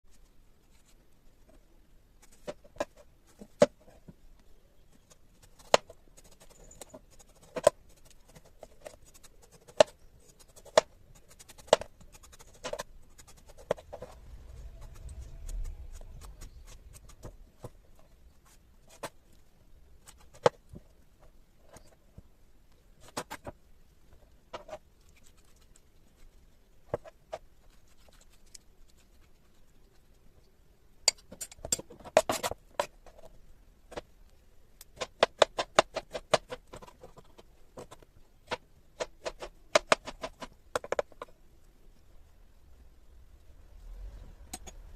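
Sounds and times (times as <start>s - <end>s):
low rumble: 13.8s - 17.6s.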